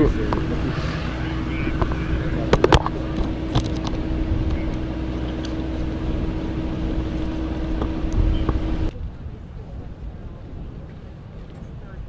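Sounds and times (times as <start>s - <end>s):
engine rumbling: 0.0s - 12.0s.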